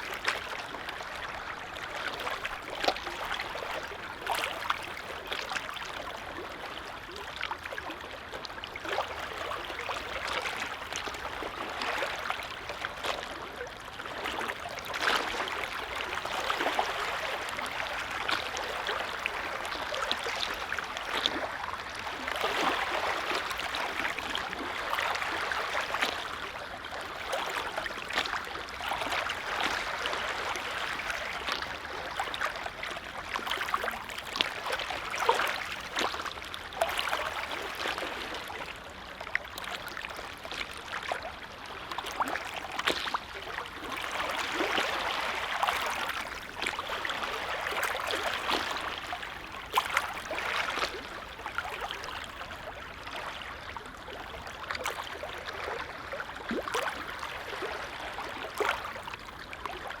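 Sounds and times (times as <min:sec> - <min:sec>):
waves lapping at shore: 0:00.0 - 1:00.0.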